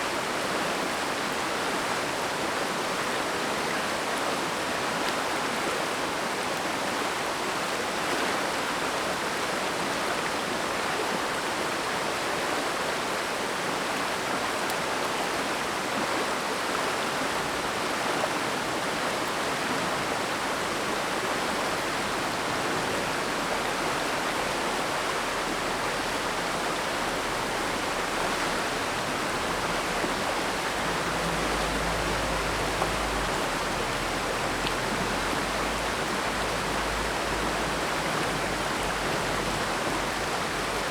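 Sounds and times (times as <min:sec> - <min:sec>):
stream rushing over rocks: 0:00.0 - 0:40.9.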